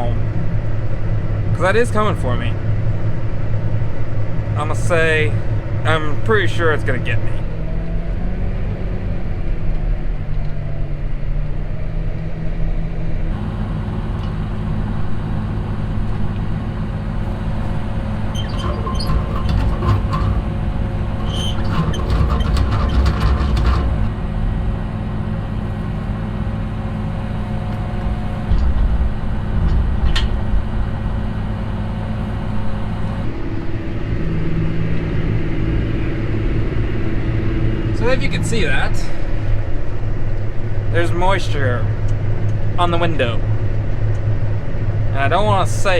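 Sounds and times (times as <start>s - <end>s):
vehicle engine running: 0.0s - 45.9s
rattling and clicking: 13.3s - 34.2s.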